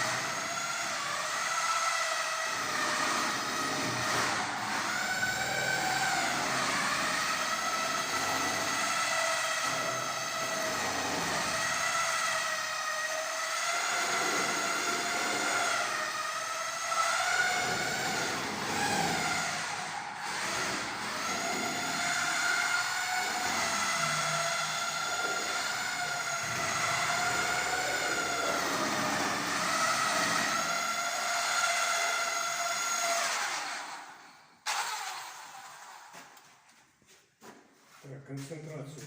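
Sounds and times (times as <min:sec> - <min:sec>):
mixer drill whining: 0:00.0 - 0:36.6.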